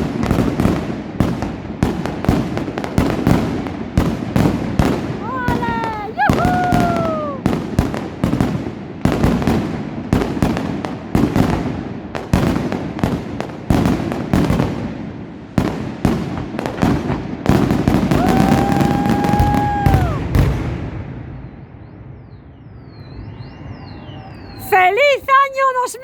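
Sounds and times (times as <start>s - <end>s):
fireworks bangs and crackling: 0.0s - 22.5s
steady whistling tone: 21.4s - 25.3s.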